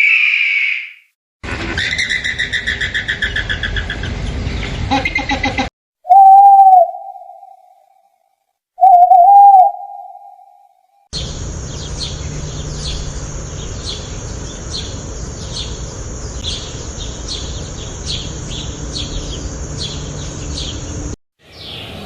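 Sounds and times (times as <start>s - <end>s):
bird chirping trill: 1.9s - 7.9s, 8.8s - 22.0s
whistled bird hoots: 6.1s - 7.9s, 8.8s - 10.9s.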